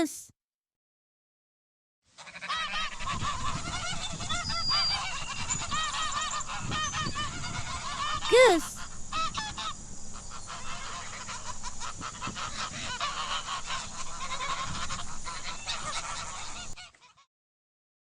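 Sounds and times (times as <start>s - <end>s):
geese honking: 10.4s - 16.8s.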